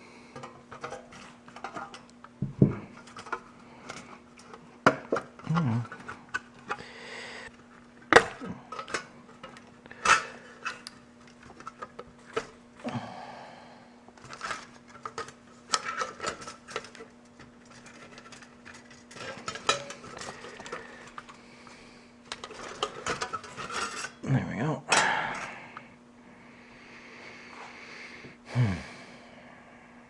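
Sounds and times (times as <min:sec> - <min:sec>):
faint steady hum: 0:00.0 - 0:30.0
metallic clicks and clatter of toaster: 0:08.0 - 0:12.5, 0:14.2 - 0:21.4, 0:22.3 - 0:24.2.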